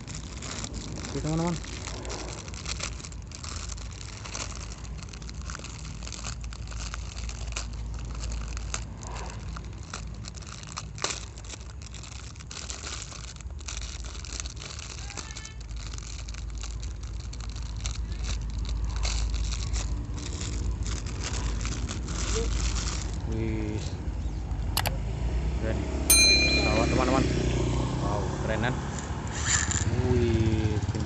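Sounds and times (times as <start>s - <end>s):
plastic packaging crinkling and tearing: 0.0s - 24.1s.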